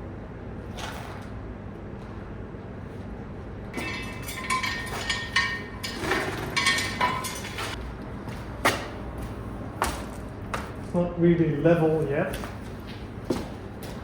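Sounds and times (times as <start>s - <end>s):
metal clinks from car jack: 3.8s - 7.8s.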